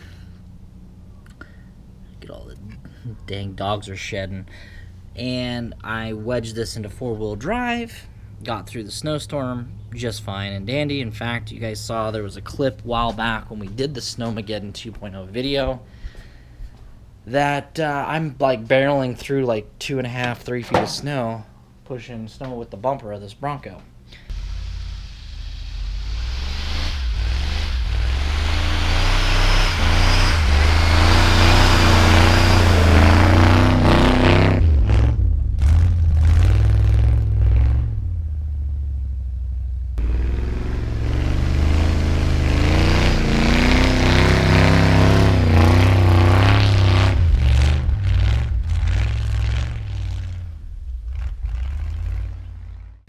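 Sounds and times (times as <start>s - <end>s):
truck engine revving hard: 24.4s - 38.2s, 40.0s - 53.0s.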